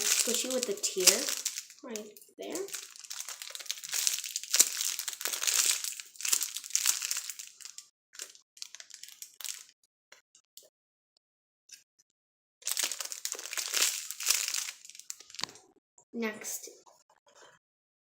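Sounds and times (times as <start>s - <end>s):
squishy toy crinkling: 0.0s - 9.7s, 12.6s - 15.6s.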